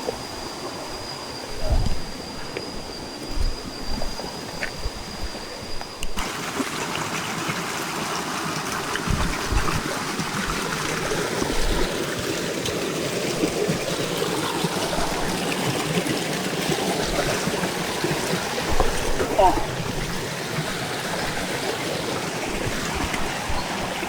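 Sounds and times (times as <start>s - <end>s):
thin high whine: 0.0s - 6.2s
rushing stream water: 6.2s - 24.0s.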